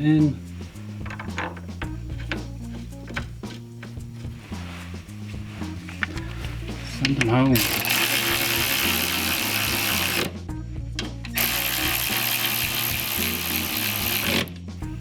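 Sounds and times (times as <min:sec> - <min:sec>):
background music: 0:00.0 - 0:15.0
ratchet spinning bolts: 0:07.1 - 0:10.3, 0:11.3 - 0:14.5.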